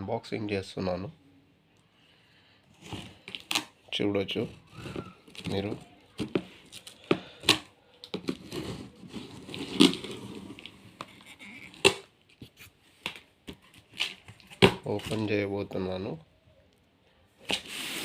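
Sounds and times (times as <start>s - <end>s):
cardboard box rustling and scraping: 2.8s - 3.4s, 8.2s - 11.8s.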